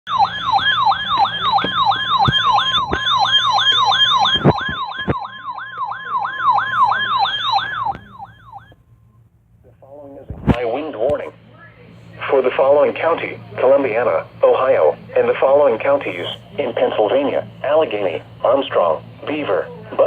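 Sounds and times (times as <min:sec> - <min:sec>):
steady high tone: 0:00.1 - 0:09.2.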